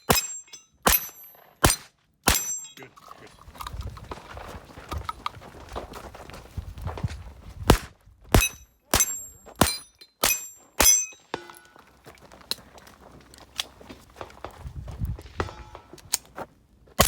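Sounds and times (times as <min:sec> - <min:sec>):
steel target ping: 0:00.0 - 0:02.8, 0:08.4 - 0:11.8
pistol shots: 0:00.1 - 0:02.6, 0:07.7 - 0:11.1.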